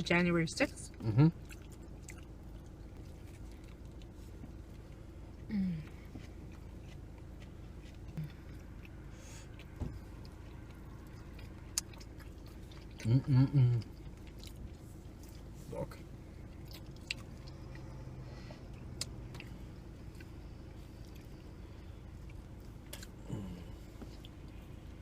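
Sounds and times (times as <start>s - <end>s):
low background hum: 0.0s - 25.0s
person chewing: 0.9s - 15.6s, 16.4s - 25.0s
person humming mm: 5.5s - 6.1s, 13.0s - 13.8s, 23.2s - 23.8s.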